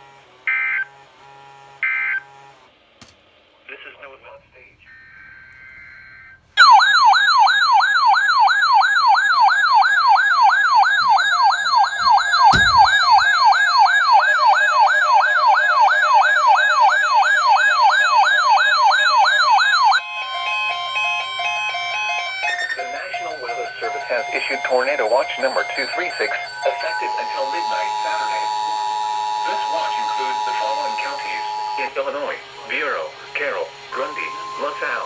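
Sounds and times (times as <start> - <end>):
electronic siren yelping: 0.5 - 1.0, 1.8 - 2.4, 4.9 - 35.0
thump: 12.0 - 13.4.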